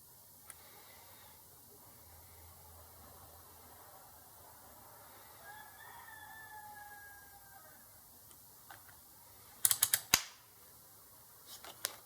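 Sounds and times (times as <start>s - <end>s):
sharp clicks of hand tools: 9.6s - 10.3s.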